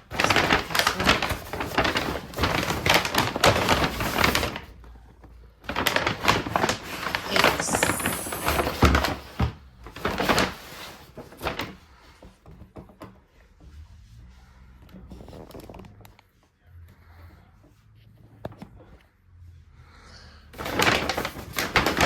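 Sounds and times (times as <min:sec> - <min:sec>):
groceries knocking and thunking: 0:00.0 - 0:13.2
bag rustling: 0:05.7 - 0:09.2.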